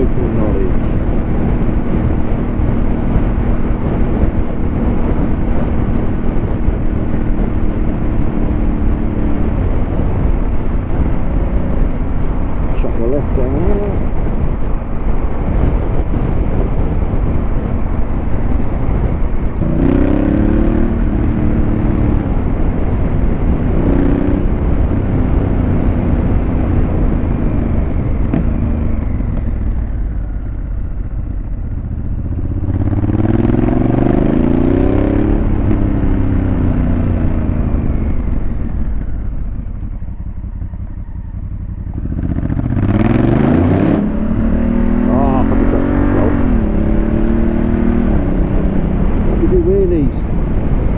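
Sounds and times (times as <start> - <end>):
motorcycle accelerating hard: 0.0 - 50.9
wind on microphone: 0.0 - 50.9.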